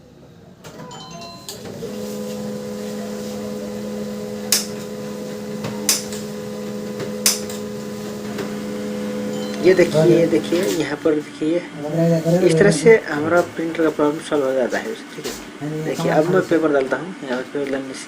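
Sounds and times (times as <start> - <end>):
printer motor hum: 1.6 - 11.0
printer sharp clicks: 4.5 - 4.9, 5.9 - 6.3, 7.2 - 7.6.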